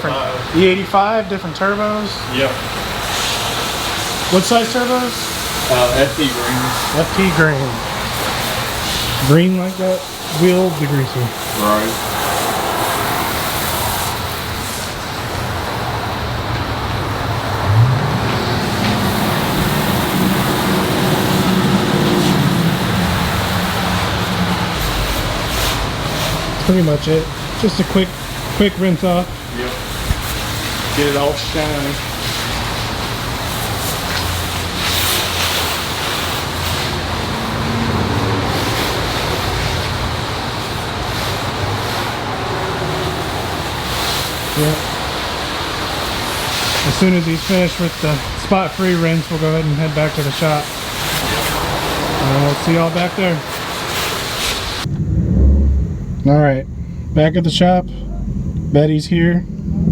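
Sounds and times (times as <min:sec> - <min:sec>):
pressure washer spray hissing: 0:01.7 - 0:54.9
vehicle engine running: 0:12.9 - 0:54.0, 0:54.6 - 0:59.9
low hum: 0:16.7 - 0:28.3, 0:54.8 - 0:59.9.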